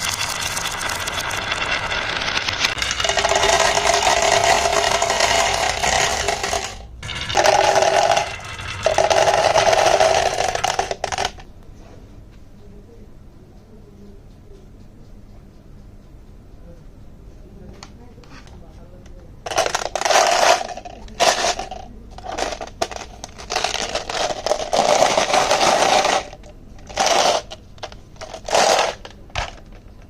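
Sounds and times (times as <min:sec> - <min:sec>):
toy wheels rattling on wooden ramps: 0:00.0 - 0:11.4, 0:19.5 - 0:30.0
steady hum: 0:00.0 - 0:30.0.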